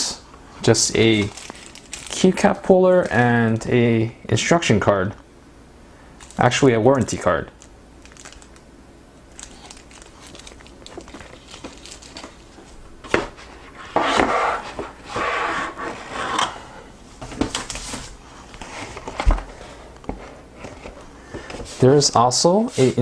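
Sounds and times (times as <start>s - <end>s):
packaging rustling and scraping: 0.6s - 3.7s, 7.6s - 8.6s, 9.3s - 22.0s.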